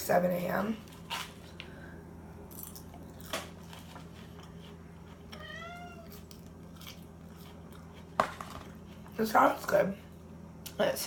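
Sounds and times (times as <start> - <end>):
cat meowing: 5.4 - 6.2.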